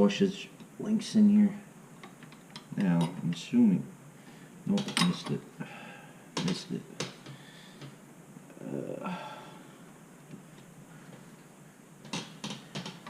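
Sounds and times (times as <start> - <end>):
man grunting with effort: 8.5 - 9.4.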